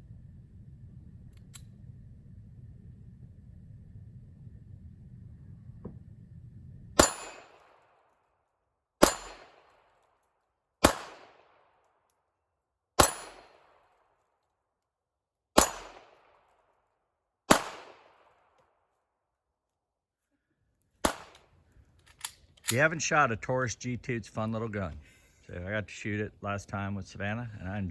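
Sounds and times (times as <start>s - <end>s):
pistol shots: 7.0s - 7.8s, 9.0s - 9.7s, 10.8s - 11.7s, 13.0s - 13.8s, 15.6s - 16.5s, 17.5s - 18.5s, 21.0s - 21.5s.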